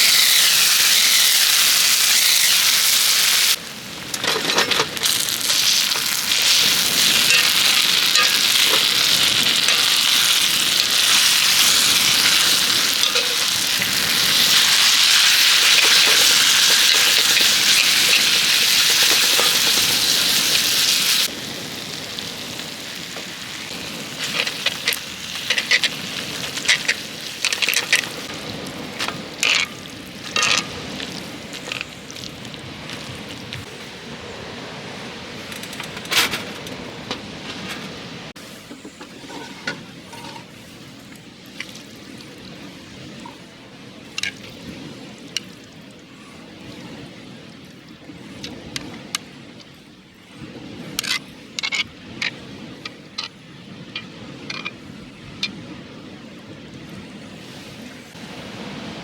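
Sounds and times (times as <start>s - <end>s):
food sizzling on griddle: 0.0s - 3.7s, 4.9s - 33.3s.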